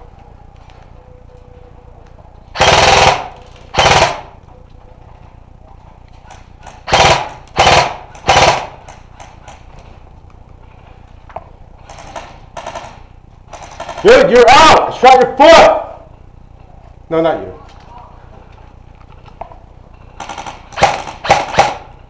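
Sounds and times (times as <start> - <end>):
airsoft rifle full-auto bursts: 2.5 - 4.4, 6.6 - 9.6, 11.8 - 14.8, 20.2 - 22.0.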